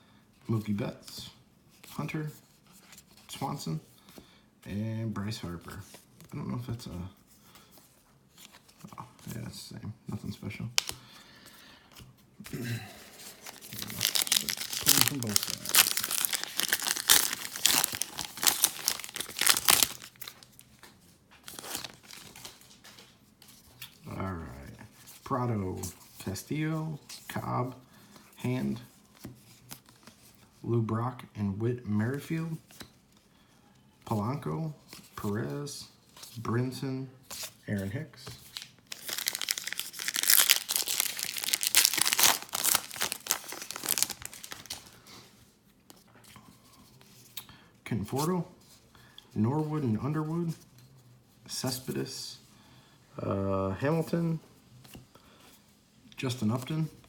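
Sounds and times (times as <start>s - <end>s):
card pack wrapper crinkling and tearing: 13.2s - 20.7s, 21.4s - 22.8s, 38.4s - 45.0s.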